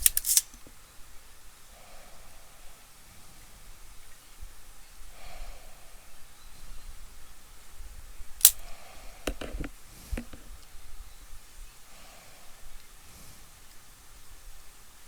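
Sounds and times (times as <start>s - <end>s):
hand tool snap: 0.0s - 0.7s, 8.4s - 8.7s
hand tools clicking: 0.0s - 0.7s, 8.4s - 8.7s.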